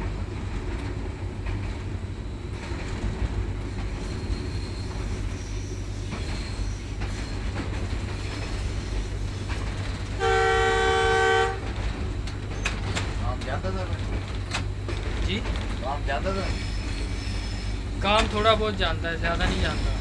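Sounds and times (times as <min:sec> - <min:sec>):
train carriages rumbling: 0:00.0 - 0:20.0
faint wheel squeals: 0:04.0 - 0:09.8, 0:16.3 - 0:18.4
loud train horn: 0:10.1 - 0:11.7.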